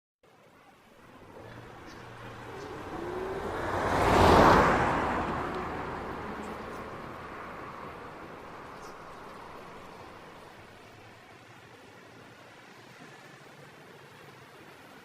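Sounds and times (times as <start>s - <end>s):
vehicle passing close by: 1.0s - 11.0s.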